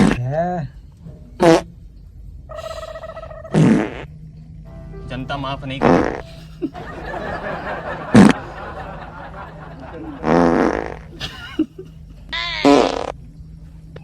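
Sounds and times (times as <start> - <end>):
farting: 0.0 - 0.3, 1.4 - 1.8, 2.5 - 4.2, 5.8 - 6.3, 8.1 - 8.4, 10.2 - 11.2, 12.4 - 13.2
low hum: 0.0 - 12.4.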